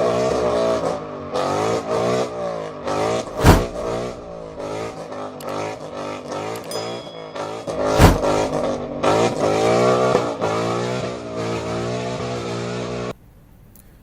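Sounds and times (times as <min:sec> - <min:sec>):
car engine revving: 0:00.0 - 0:06.7, 0:07.7 - 0:13.1
sharp bang: 0:03.2 - 0:04.9, 0:07.7 - 0:09.8.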